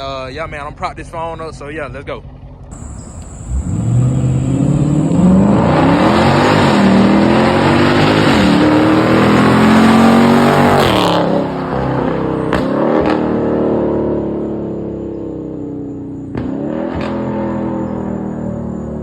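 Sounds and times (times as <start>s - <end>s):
exhaust cracks: 2.7s - 7.0s
car engine accelerating hard: 2.7s - 19.0s.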